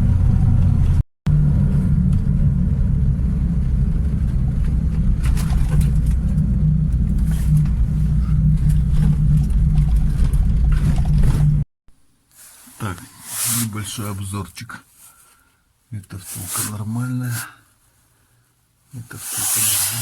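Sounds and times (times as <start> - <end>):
engine and road rumble: 0.0 - 11.7.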